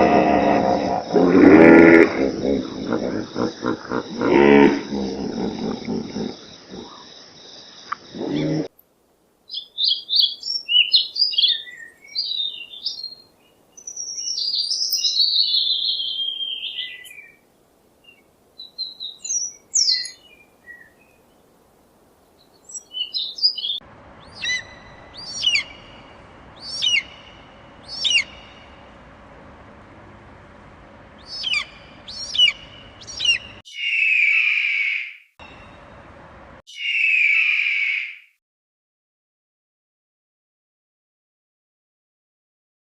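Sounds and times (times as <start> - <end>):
deep animal sound: 0.0 - 7.1, 8.0 - 8.7
background hiss: 0.0 - 33.6
birds chirping and warbling: 9.5 - 21.6, 22.2 - 38.2
short sharp bird calls: 23.0 - 28.9.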